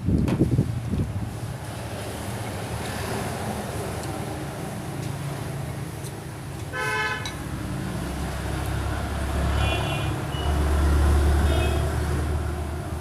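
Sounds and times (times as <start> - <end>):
road traffic rumbling: 0.0 - 13.0
horn toot: 6.8 - 7.4.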